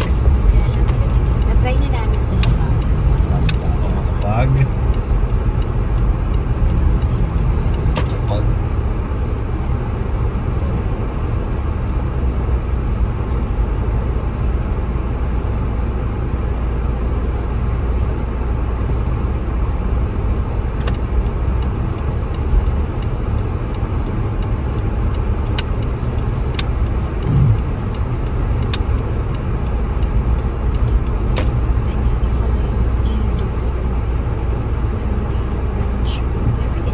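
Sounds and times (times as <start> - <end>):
car engine and tyre rumble: 0.0 - 36.9
quick regular ticking: 23.4 - 34.9.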